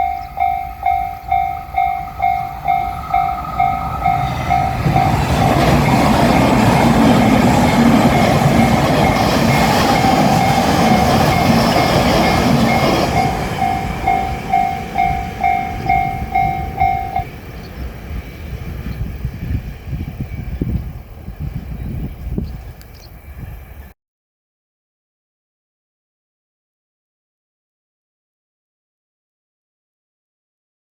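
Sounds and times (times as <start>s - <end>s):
crossing bell two-tone ding: 0.0s - 17.3s
electric train passing: 0.0s - 23.9s.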